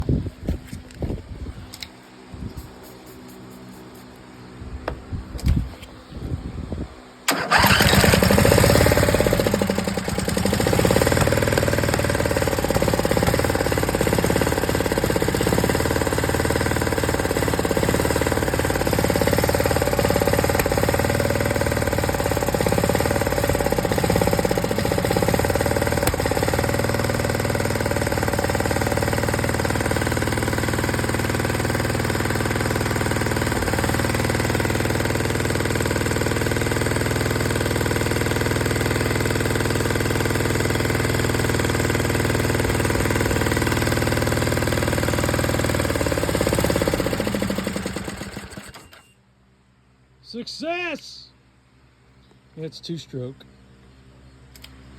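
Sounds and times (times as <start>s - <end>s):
engine starting and running: 7.2s - 49.2s.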